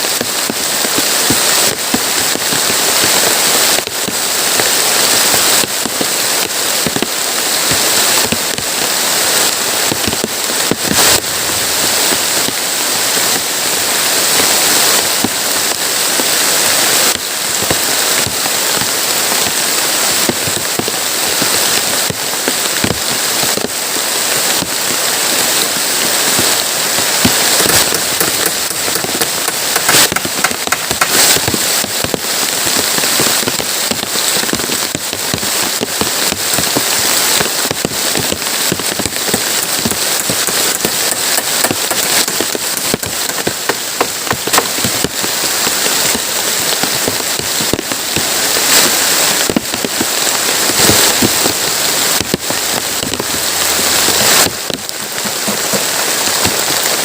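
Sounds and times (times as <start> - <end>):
heavy rain falling: 0.0 - 57.0.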